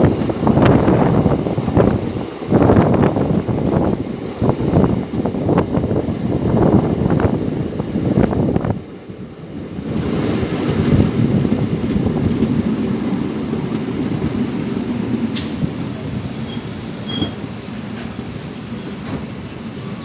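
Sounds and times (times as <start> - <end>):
train wheels rumbling: 0.0 - 20.0
sharp clank: 15.4 - 15.8.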